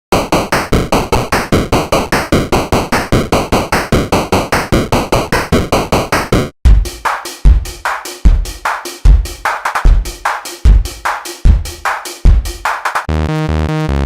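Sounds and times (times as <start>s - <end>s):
beat with deep drum hits: 0.1s - 13.1s
fast repeated electronic notes: 0.1s - 13.8s.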